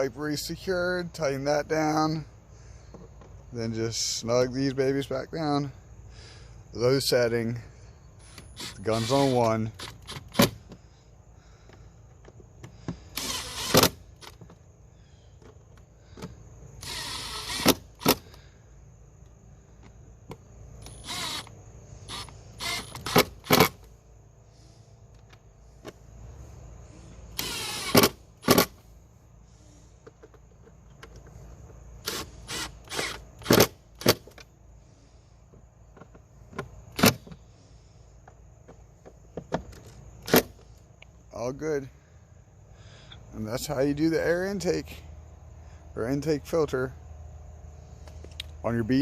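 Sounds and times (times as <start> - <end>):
power driver whirring: 12.6 - 14.4, 16.2 - 18.4, 20.8 - 23.9, 27.3 - 28.7, 32.0 - 33.7.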